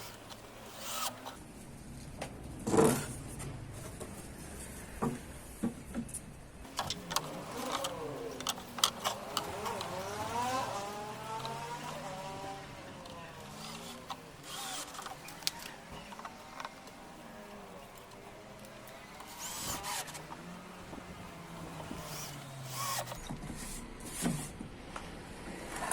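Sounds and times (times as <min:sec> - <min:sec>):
electric drill motor running: 0:00.0 - 0:01.4, 0:06.7 - 0:17.0, 0:18.8 - 0:20.7, 0:21.3 - 0:23.2.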